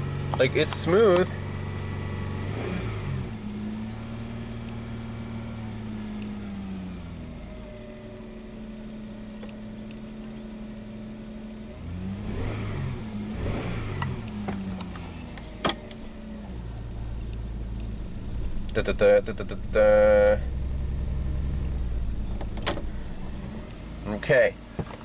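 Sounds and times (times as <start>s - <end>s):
misfiring engine running: 13.3s - 24.7s.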